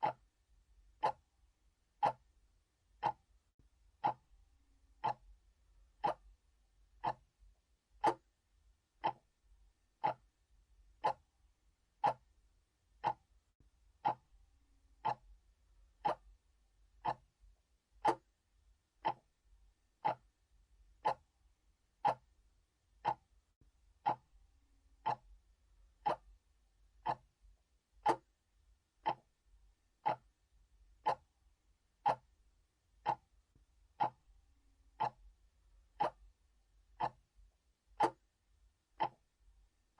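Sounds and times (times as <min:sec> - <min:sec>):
clock ticking: 0:00.0 - 0:00.3, 0:01.0 - 0:01.3, 0:02.0 - 0:02.3, 0:03.0 - 0:03.3, 0:04.0 - 0:04.3, 0:05.0 - 0:05.3, 0:06.0 - 0:06.4, 0:07.0 - 0:07.3, 0:08.0 - 0:08.3, 0:09.0 - 0:09.4, 0:10.0 - 0:10.3, 0:11.0 - 0:11.3, 0:12.0 - 0:12.4, 0:13.0 - 0:13.3, 0:14.0 - 0:14.4, 0:15.0 - 0:15.4, 0:16.0 - 0:16.4, 0:17.0 - 0:17.4, 0:18.0 - 0:18.4, 0:19.0 - 0:19.3, 0:20.0 - 0:20.4, 0:21.0 - 0:21.3, 0:22.0 - 0:22.4, 0:23.0 - 0:23.3, 0:24.0 - 0:24.3, 0:25.0 - 0:26.4, 0:27.0 - 0:27.4, 0:28.0 - 0:28.4, 0:29.0 - 0:29.4, 0:30.0 - 0:30.4, 0:31.0 - 0:32.4, 0:33.0 - 0:38.4, 0:39.0 - 0:39.5.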